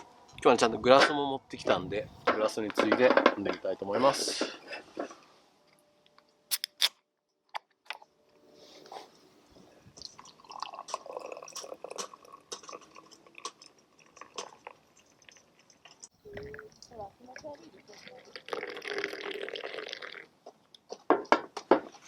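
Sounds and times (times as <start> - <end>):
beer pouring into a glass: 10.0 - 15.9, 18.0 - 20.3.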